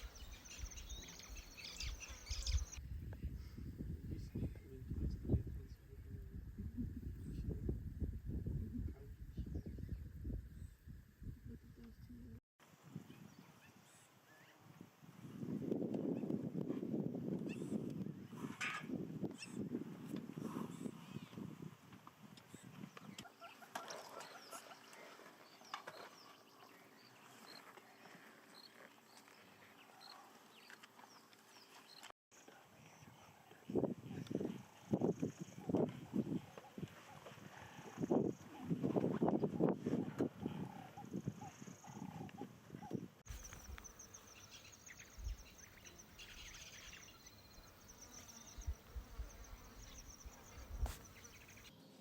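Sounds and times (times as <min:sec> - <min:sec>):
small birds chirping: 0:00.0 - 0:02.8, 0:42.9 - 0:51.8.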